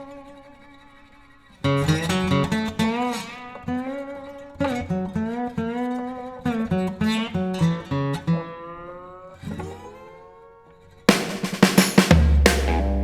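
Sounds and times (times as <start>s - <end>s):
music with drums and bass: 11.1s - 13.0s
plucked guitar notes: 12.1s - 13.0s.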